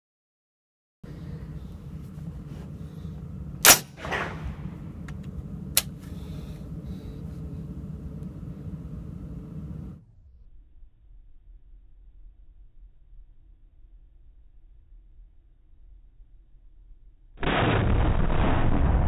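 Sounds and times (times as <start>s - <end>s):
steady low rumble: 1.0s - 19.0s
rifle shot with echo: 3.6s - 4.8s
sharp crack: 3.6s - 4.8s, 17.4s - 19.0s.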